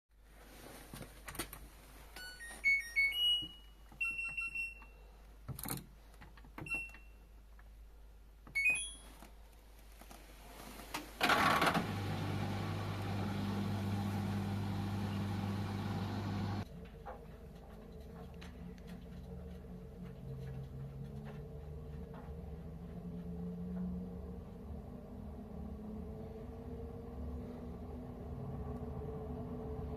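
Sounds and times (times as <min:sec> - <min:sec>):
washing machine running hum: 0:11.2 - 0:16.7.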